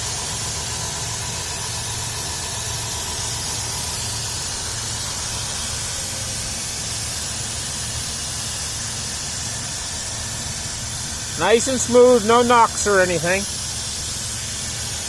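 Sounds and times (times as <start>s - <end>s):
car engine idling: 0.0s - 15.0s
steady hiss: 4.4s - 14.8s.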